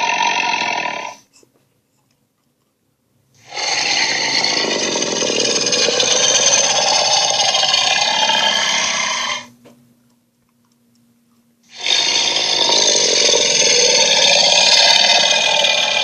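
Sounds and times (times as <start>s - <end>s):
cartoon monster growl: 0.0s - 1.2s, 3.4s - 9.5s, 11.7s - 16.0s.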